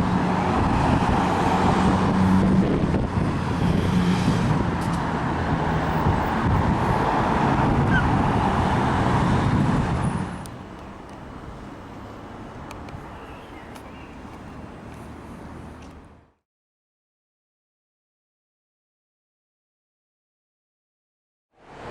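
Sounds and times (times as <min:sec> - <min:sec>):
diesel train engine humming: 0:04.4 - 0:15.8.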